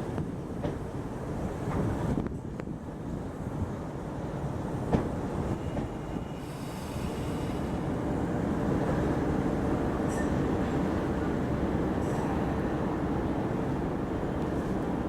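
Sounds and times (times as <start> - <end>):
train wheels rumbling on rails: 0.0 - 15.0.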